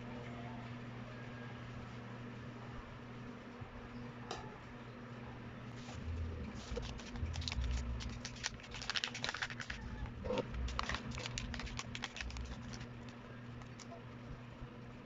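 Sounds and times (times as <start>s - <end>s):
steady low hum: 0.0s - 15.0s
small parts clicking and rustling: 6.6s - 9.9s, 10.7s - 13.9s.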